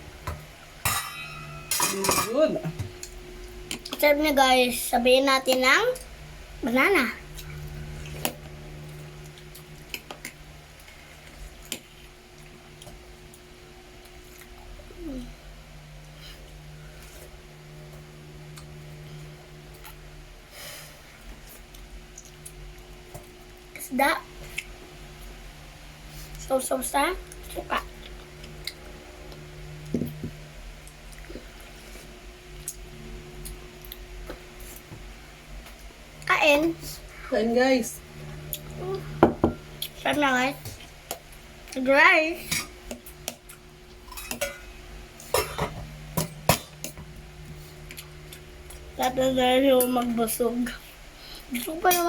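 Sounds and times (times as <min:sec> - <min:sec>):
low steady hum: 0:00.0 - 0:52.0
faint chewing and mouth noises: 0:21.2 - 0:23.4, 0:46.8 - 0:49.2.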